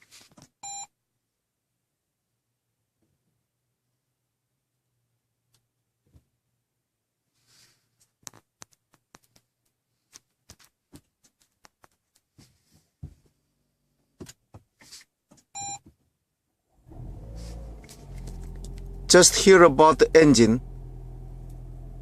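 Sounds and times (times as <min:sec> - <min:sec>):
car engine starting and humming: 0:16.7 - 0:22.0.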